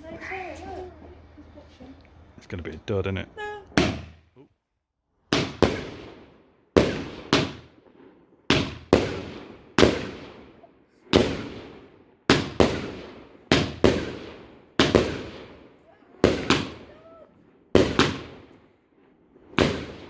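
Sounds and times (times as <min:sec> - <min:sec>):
fireworks bangs echoing: 0:03.7 - 0:04.3, 0:05.3 - 0:20.0.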